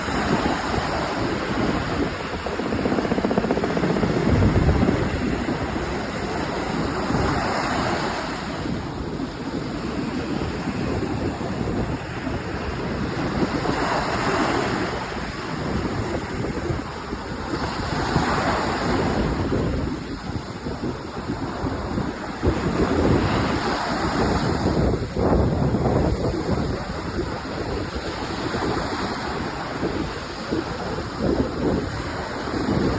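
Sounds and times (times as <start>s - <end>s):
ocean surf breaking: 0.0s - 19.4s
wind buffeting microphone: 0.0s - 32.9s.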